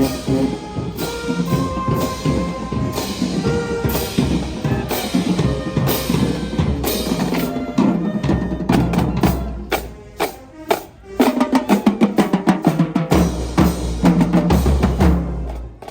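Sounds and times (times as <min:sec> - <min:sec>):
drum strikes: 0:00.0 - 0:09.9.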